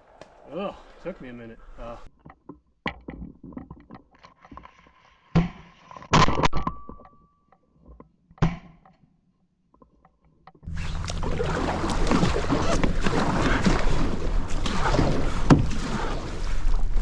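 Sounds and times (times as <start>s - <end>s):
sharp knocks and thumps: 14.6s - 15.9s.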